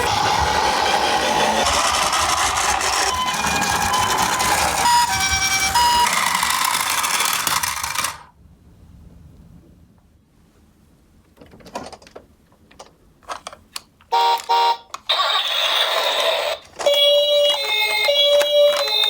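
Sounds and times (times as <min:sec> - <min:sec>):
toy siren warbling: 0:00.0 - 0:08.2, 0:14.2 - 0:19.0.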